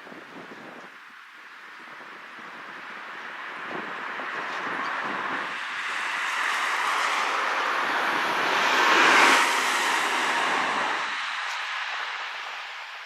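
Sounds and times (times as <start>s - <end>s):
vehicle passing by: 4.3s - 12.7s.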